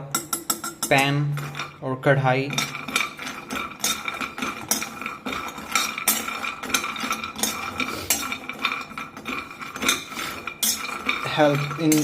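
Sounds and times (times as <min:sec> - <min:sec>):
spoon scraping and clinking in pan: 0:02.4 - 0:12.0.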